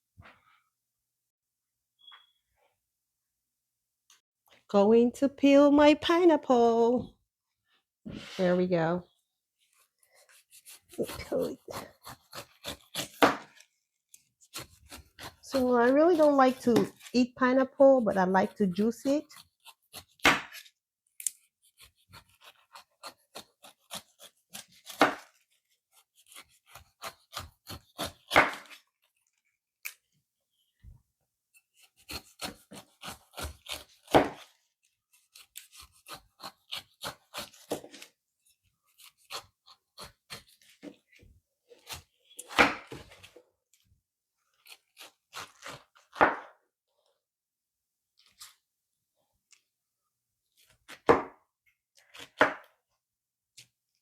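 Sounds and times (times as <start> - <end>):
knife cutting pineapple: 9.7 - 30.0, 31.5 - 38.2, 38.8 - 41.1, 41.8 - 43.4, 44.4 - 46.6.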